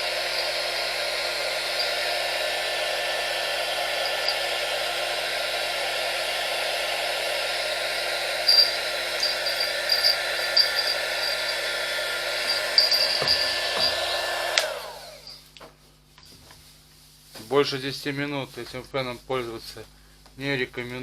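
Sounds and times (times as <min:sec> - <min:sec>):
heat gun blowing hot air: 0:00.0 - 0:15.4.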